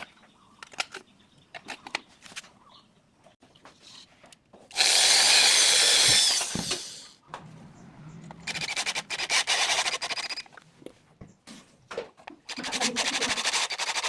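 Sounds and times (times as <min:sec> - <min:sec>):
power drill on aluminium: 0:04.7 - 0:07.2, 0:08.4 - 0:10.5, 0:12.5 - 0:14.0.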